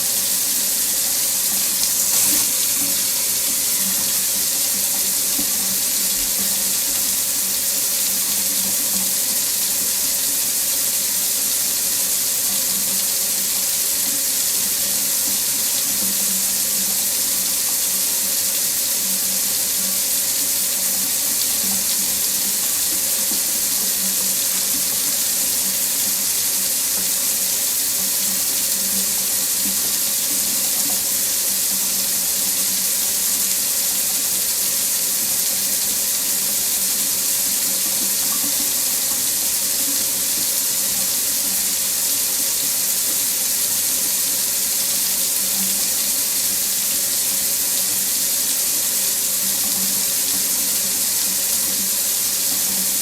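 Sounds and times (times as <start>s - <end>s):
faucet running into sink: 0.0s - 53.0s
water splash: 1.5s - 4.2s.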